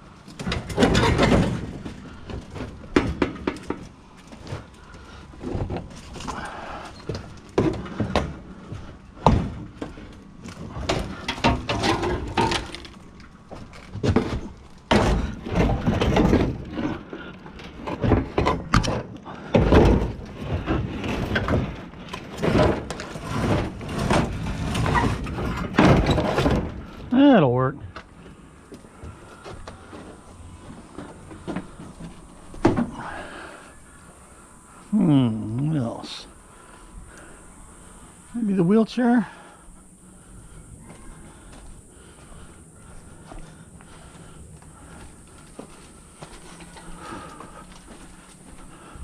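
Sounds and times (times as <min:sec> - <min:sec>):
scrap items knocking and clattering: 0:00.4 - 0:04.7, 0:10.6 - 0:12.9, 0:13.6 - 0:26.9.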